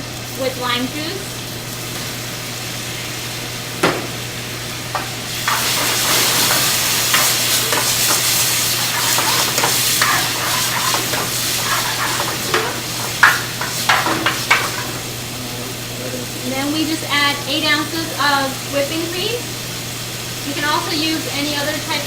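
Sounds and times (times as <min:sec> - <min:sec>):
chicken sizzling in a pan: 0:00.0 - 0:22.0
utensil knocking and scraping pan: 0:05.0 - 0:15.0.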